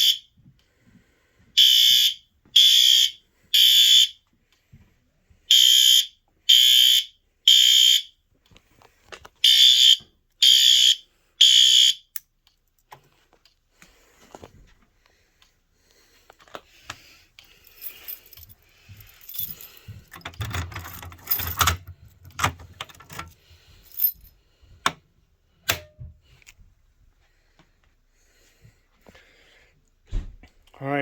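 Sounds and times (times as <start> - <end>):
hardware jangling and rattling: 17.4 - 24.4.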